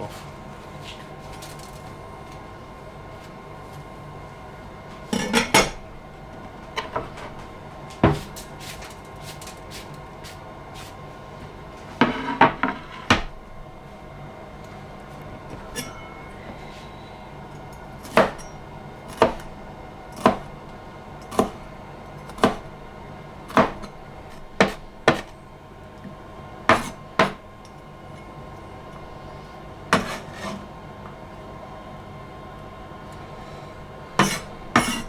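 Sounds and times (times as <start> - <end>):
knife chopping on cutting board: 18.0 - 18.5, 19.1 - 19.6, 20.2 - 20.6, 21.3 - 21.7, 22.3 - 22.7, 23.5 - 25.3, 26.7 - 27.4, 29.9 - 30.6, 34.2 - 35.0.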